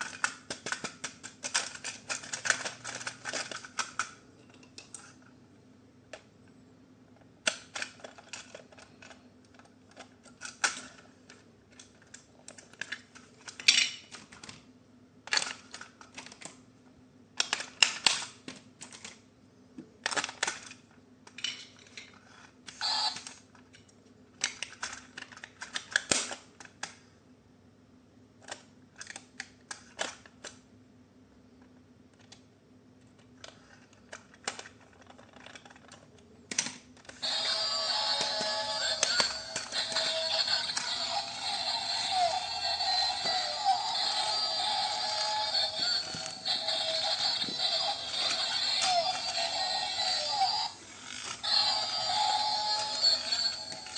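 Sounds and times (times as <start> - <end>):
plastic parts clicking and tapping: 0.0 - 5.1, 7.4 - 14.7, 15.3 - 16.6, 17.4 - 19.2, 19.8 - 22.2, 23.1 - 27.0, 28.4 - 30.6, 32.1 - 37.2
faint steady hum: 0.0 - 53.9.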